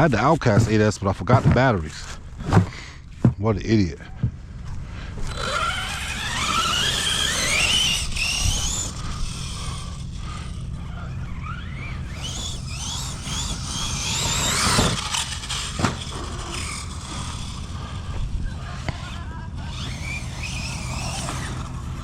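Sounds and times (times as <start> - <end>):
electric motor whining: 4.6 - 22.0.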